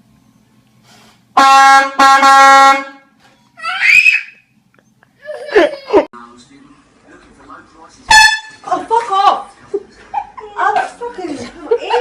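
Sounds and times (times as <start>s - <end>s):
air horn blasts: 1.3s - 3.2s, 8.1s - 8.6s.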